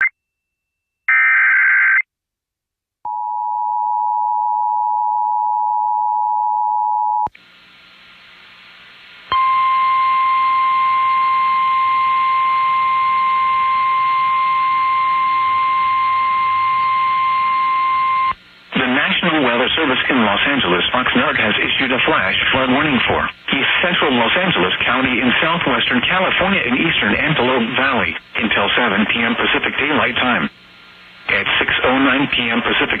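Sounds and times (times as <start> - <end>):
steady warning tone: 9.3 - 19.8
radio static: 18.7 - 30.6, 31.2 - 33.0.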